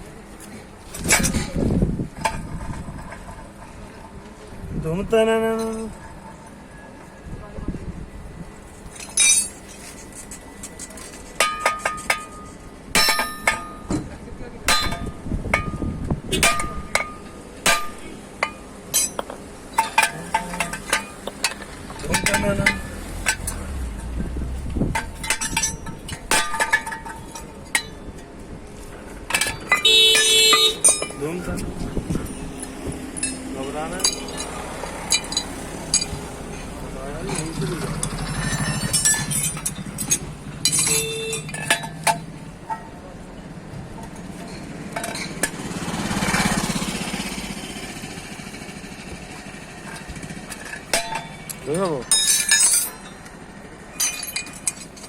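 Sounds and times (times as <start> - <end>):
hand tools clinking on metal: 8.9 - 42.9, 49.4 - 55.0
low pulsing hum: 20.2 - 27.3.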